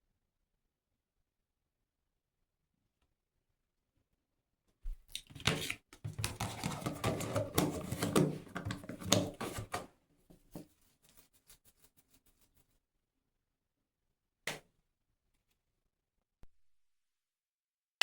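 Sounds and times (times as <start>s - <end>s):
hair care rustling and clicks: 5.1s - 9.9s.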